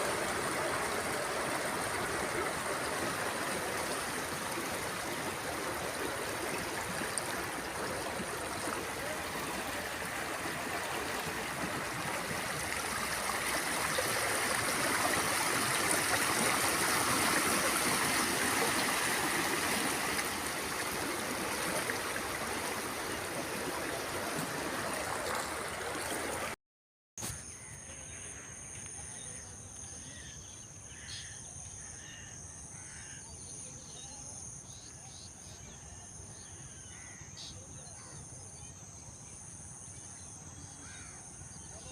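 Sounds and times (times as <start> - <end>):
river flowing: 0.0 - 26.6.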